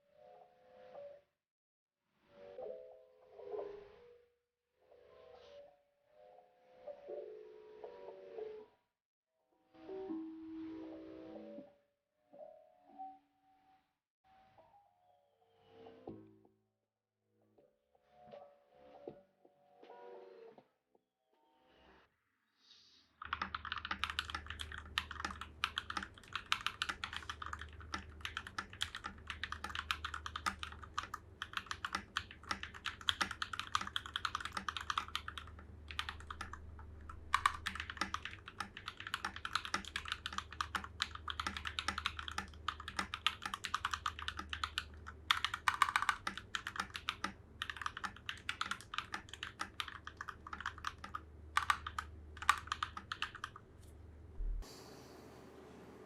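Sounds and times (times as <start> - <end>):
mechanical keyboard typing: 23.2 - 53.6
faint low hum: 23.5 - 56.0.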